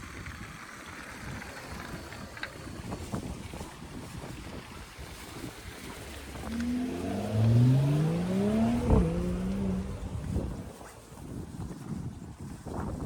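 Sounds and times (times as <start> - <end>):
traffic rumble: 0.0 - 12.5
vehicle engine accelerating: 5.2 - 11.8.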